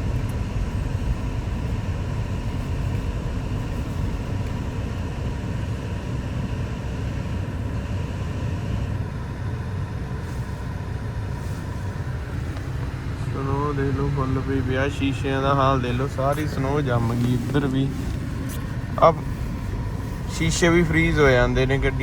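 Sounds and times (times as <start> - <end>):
car engine and tyres rumbling: 0.0 - 22.0
road hiss: 10.0 - 22.0.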